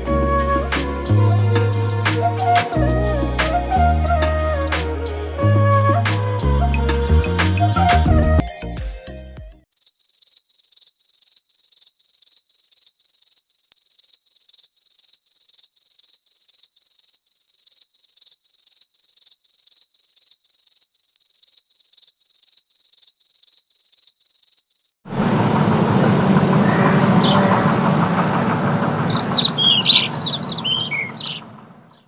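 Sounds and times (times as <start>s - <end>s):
cricket chirping: 9.7s - 24.9s
loud running engine: 25.1s - 31.9s.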